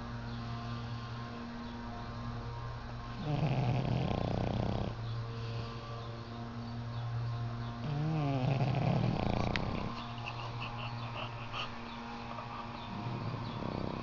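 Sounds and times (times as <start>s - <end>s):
steady low hum: 0.0s - 14.0s
dog snoring: 3.1s - 5.6s, 7.8s - 14.0s.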